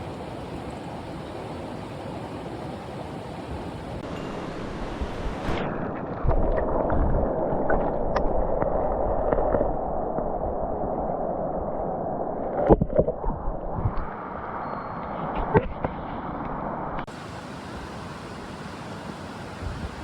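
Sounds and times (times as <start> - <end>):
mountain stream rushing water: 0.0 - 20.0.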